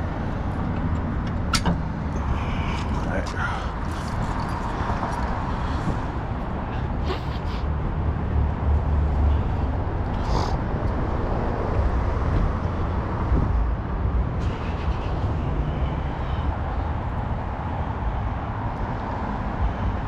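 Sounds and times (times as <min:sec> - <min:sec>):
road noise: 0:00.0 - 0:20.0
vehicle engine rumble: 0:00.0 - 0:20.0.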